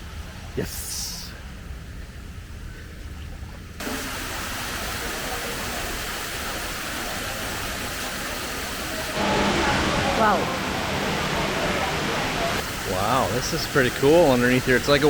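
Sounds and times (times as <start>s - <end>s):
falling water hissing: 3.8s - 15.0s.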